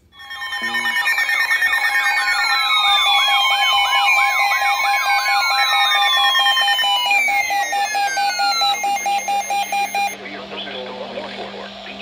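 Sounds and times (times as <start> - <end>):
rapidly pulsing steady tone: 0.0 - 10.2
warbling alarm tone: 0.0 - 10.2.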